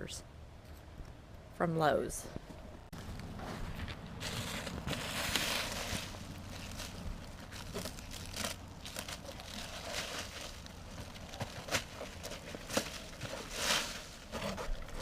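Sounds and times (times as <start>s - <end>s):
roofing material crinkling: 3.5s - 15.0s.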